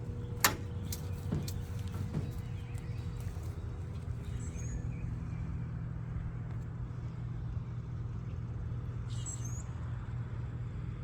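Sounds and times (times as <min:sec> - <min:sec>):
distant road traffic rumble: 0:00.0 - 0:05.1.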